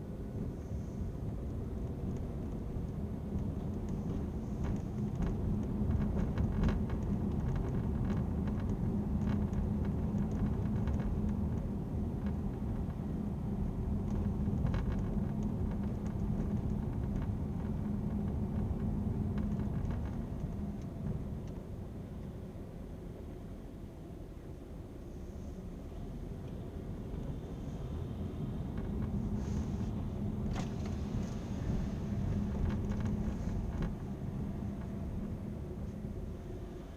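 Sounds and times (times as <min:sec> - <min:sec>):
car cabin road drone: 0:00.0 - 0:36.9
faint clicks and rattles: 0:01.5 - 0:13.1, 0:13.7 - 0:21.6, 0:26.4 - 0:36.4.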